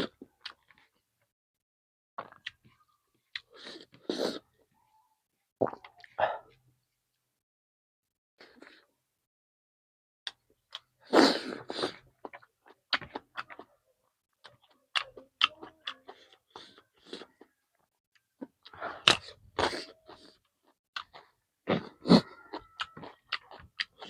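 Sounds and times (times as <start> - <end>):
chewing and lip smacks: 11.9 - 13.7, 14.4 - 24.0.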